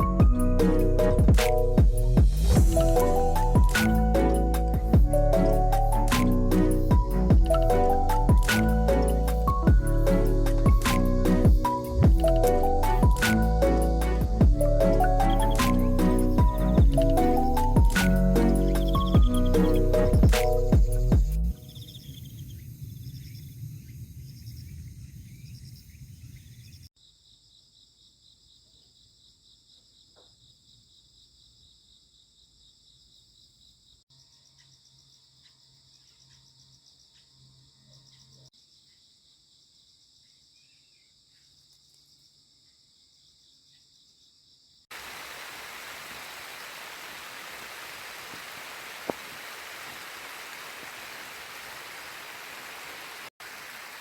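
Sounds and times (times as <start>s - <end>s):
crickets chirping: 21.2s - 54.0s
steady hiss: 44.9s - 54.0s.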